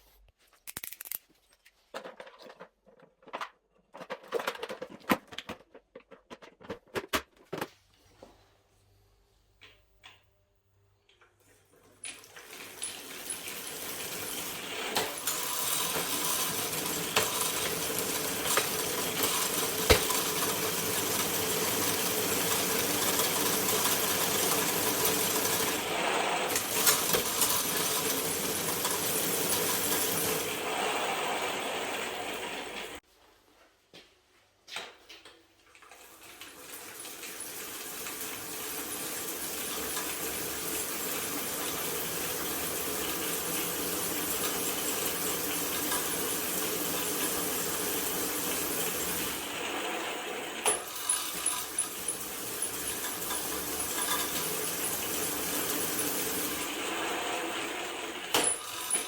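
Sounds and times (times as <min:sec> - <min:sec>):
motor humming and rattling: 0:12.5 - 0:33.0, 0:36.4 - 0:59.0.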